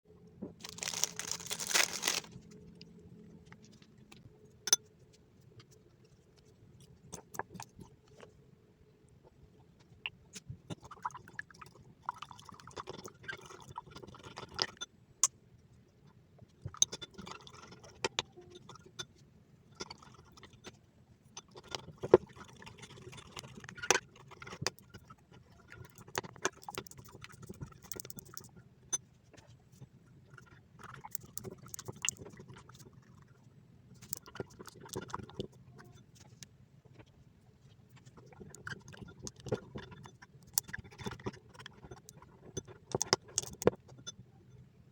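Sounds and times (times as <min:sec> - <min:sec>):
slime squishing: 0:00.6 - 0:02.5.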